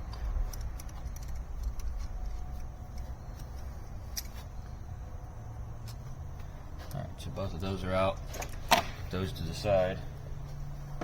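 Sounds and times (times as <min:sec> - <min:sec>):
low steady rumble: 0:00.0 - 0:11.0.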